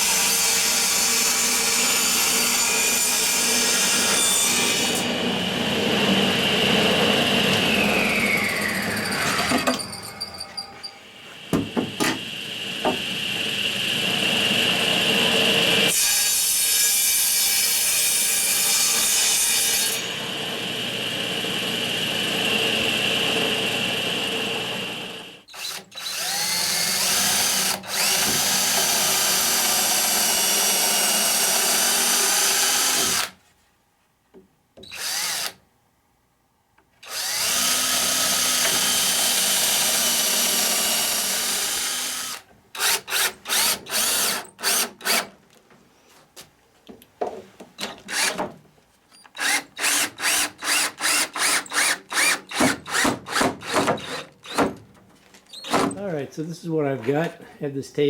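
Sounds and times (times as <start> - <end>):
power drill running: 20.1 - 33.3, 34.9 - 35.6, 37.0 - 45.3, 48.1 - 48.4, 49.4 - 54.7.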